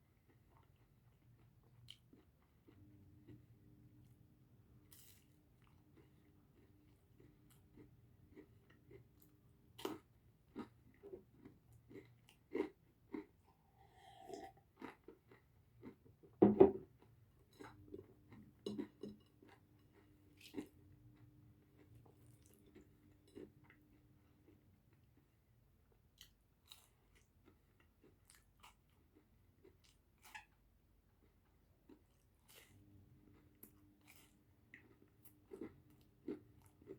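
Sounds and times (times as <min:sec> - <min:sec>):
chewing crunches: 0:04.9 - 0:16.0.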